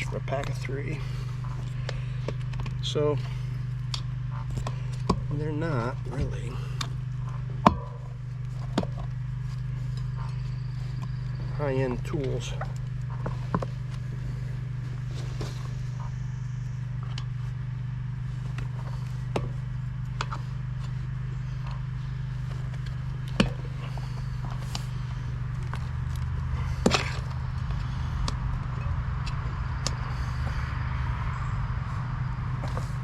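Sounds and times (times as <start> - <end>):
steady low hum: 0.0 - 33.0
tire bead snapping: 1.3 - 5.3, 18.4 - 33.0.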